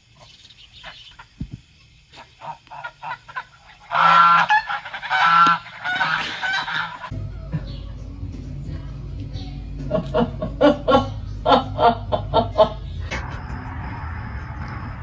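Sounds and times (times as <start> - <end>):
farm bird calling: 0.0 - 1.5, 2.1 - 8.4.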